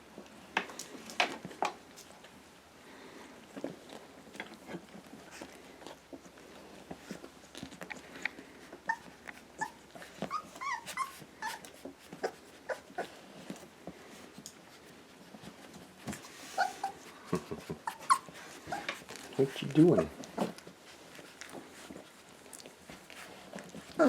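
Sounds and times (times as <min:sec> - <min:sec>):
soft knocks and shuffling: 0:03.3 - 0:24.0
puppies whimpering and squeaking: 0:07.0 - 0:13.5, 0:16.2 - 0:22.3.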